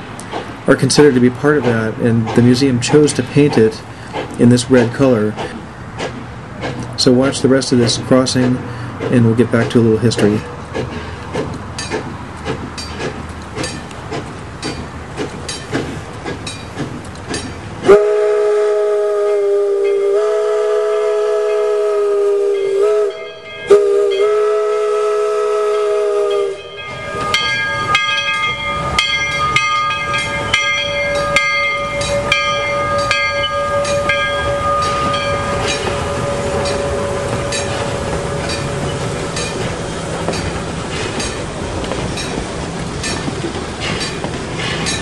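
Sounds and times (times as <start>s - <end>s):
train rolling: 0.0s - 45.0s
steam locomotive whistle: 17.8s - 30.6s, 31.2s - 39.6s
crossing signal bell ringing: 19.8s - 20.2s, 20.9s - 21.8s, 22.4s - 24.9s, 25.7s - 41.5s, 42.2s - 42.4s, 43.0s - 43.3s.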